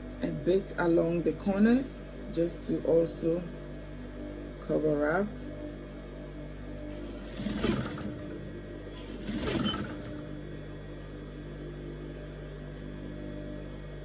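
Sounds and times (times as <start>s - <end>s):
sewing machine stitching: 6.9s - 8.4s, 9.0s - 10.2s.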